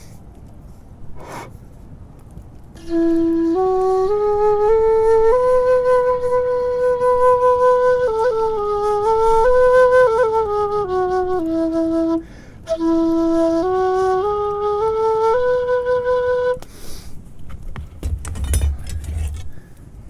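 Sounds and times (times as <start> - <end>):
quick breath: 0.0 - 1.7, 12.2 - 12.6, 16.6 - 17.2
bamboo flute notes: 2.8 - 16.9.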